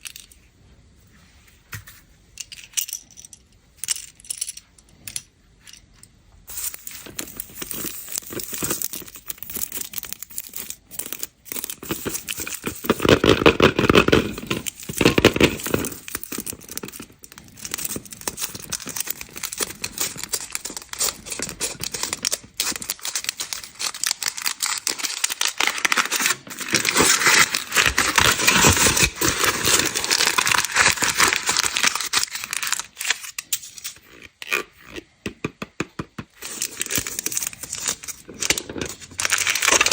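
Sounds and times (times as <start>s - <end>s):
candy wrappers crinkling: 6.5s - 34.6s, 36.4s - 39.9s.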